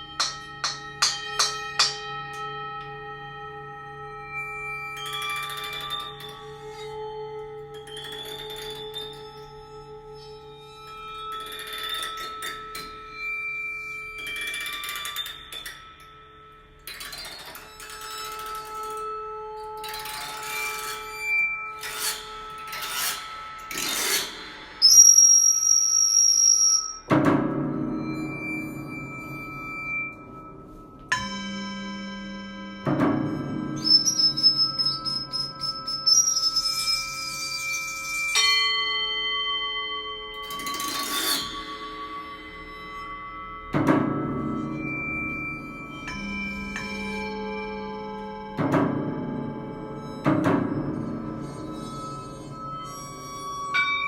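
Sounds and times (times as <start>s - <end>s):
loud high held tone: 24.8s - 27.1s, 33.7s - 37.6s
ringing singing bowl tones: 24.8s - 27.1s, 28.0s - 40.0s.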